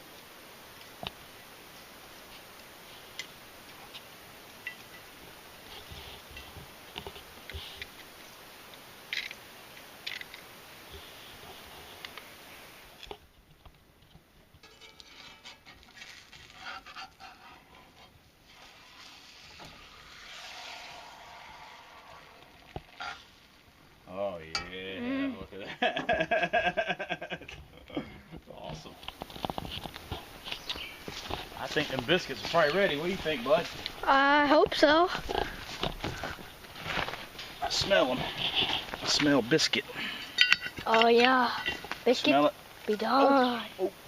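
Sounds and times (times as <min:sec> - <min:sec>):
light sizzle: 0:00.0 - 0:44.0
utensils clinking and scraping in pan: 0:14.6 - 0:16.0, 0:40.3 - 0:41.8.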